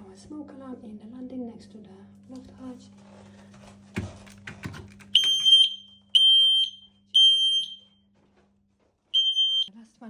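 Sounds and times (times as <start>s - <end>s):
smoke alarm beeping: 5.2s - 8.0s, 9.2s - 9.7s.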